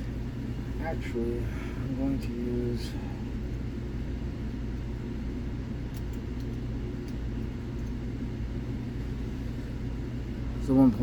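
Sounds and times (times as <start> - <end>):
low background hum: 0.0 - 11.0.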